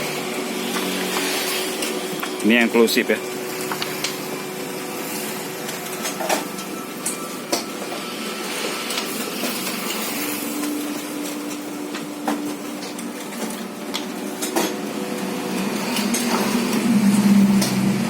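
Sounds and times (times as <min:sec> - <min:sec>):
copier mechanical hiss: 0:00.0 - 0:18.0
low hum: 0:15.4 - 0:18.0.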